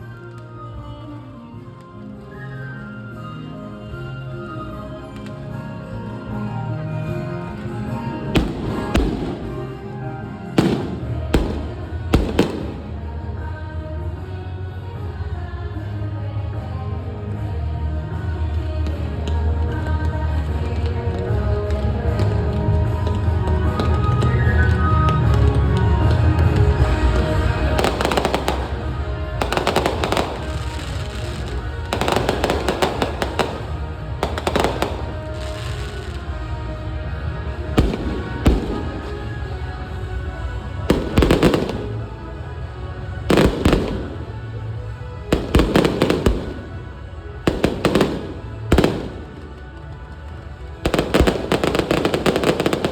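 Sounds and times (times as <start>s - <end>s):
music playing: 0.0s - 52.9s
firework shells bursting: 8.4s - 10.0s, 10.6s - 13.2s, 27.8s - 36.2s, 37.8s - 39.5s, 40.9s - 42.2s, 43.3s - 44.6s, 45.4s - 49.6s, 50.9s - 52.9s.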